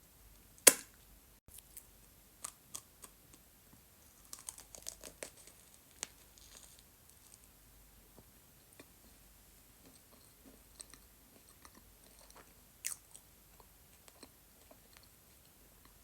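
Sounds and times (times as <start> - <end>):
sharp snap: 0.7 - 0.9
marshmallow crinkling and tearing: 4.2 - 7.5.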